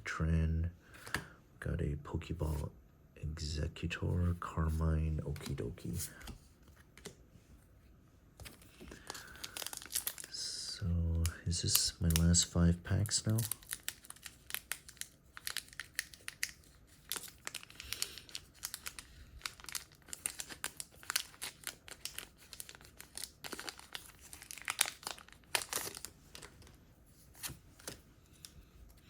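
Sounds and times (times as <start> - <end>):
foil wrapper tearing and crinkling: 8.5 - 10.4, 13.0 - 26.6.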